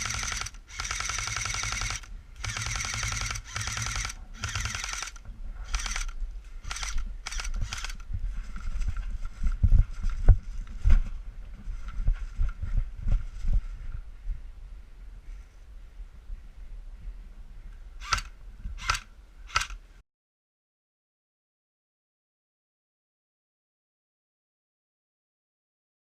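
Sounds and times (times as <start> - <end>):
airsoft gun firing bursts: 0.0 - 6.1, 6.7 - 8.0, 18.0 - 19.8.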